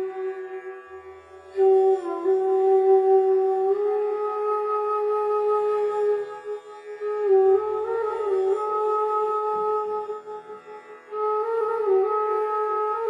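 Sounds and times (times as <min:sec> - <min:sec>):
slow flute-like melody: 0:00.0 - 0:13.0.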